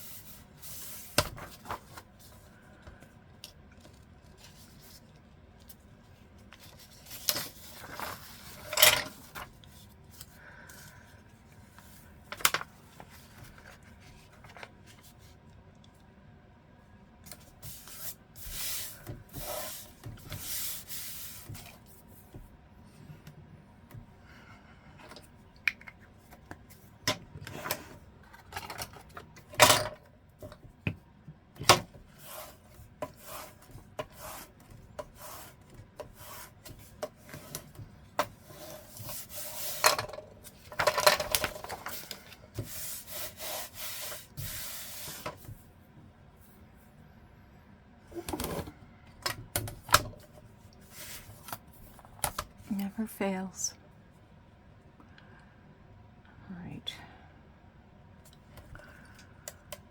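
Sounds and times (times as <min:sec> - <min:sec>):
paper rubbing and swishing: 0:41.6 - 0:45.5.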